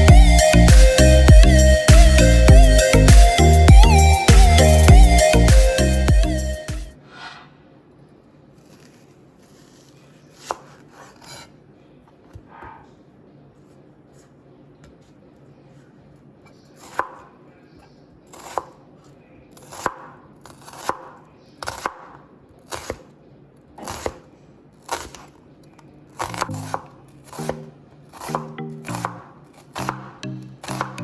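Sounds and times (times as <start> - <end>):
background music: 0.0 - 7.0, 28.3 - 31.0
knife chopping on cutting board: 8.7 - 11.5, 16.8 - 17.4, 19.6 - 23.1, 23.8 - 24.2, 24.8 - 25.4, 26.2 - 31.0.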